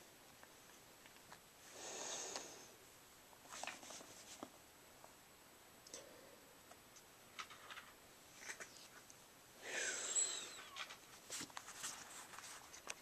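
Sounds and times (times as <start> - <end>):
faint rustles and clicks: 3.3 - 5.2, 6.7 - 9.2, 10.2 - 13.0.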